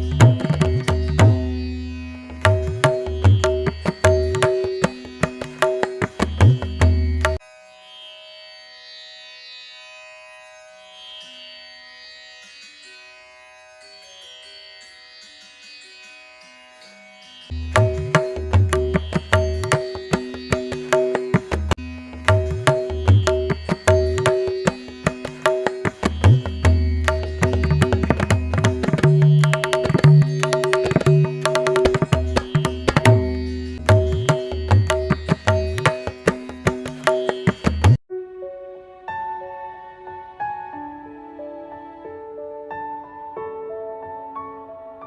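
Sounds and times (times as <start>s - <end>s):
hand drumming: 0.0s - 1.5s, 2.4s - 7.4s, 17.7s - 38.0s.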